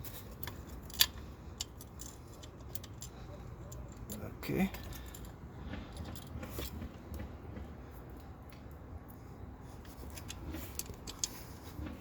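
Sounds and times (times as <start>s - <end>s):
small metal parts clicking: 0.0s - 6.8s, 9.8s - 11.4s.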